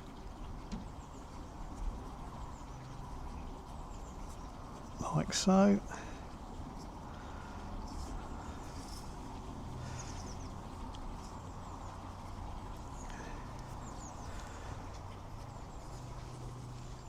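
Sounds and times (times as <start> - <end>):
steady low hum: 0.0 - 17.0
faint bird chirps: 9.8 - 17.0.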